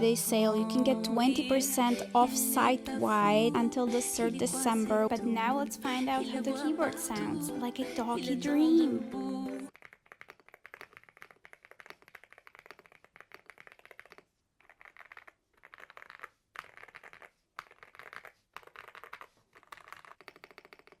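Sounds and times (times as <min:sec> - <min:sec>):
mechanical keyboard typing: 0:09.7 - 0:21.0.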